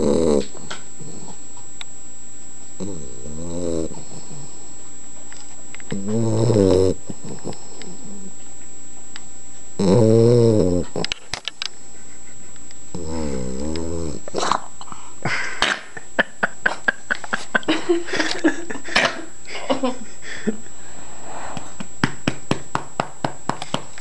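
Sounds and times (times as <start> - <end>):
puppy growling groans: 0.0 - 1.4, 2.8 - 4.6, 5.9 - 8.4, 9.8 - 11.2, 12.9 - 14.7.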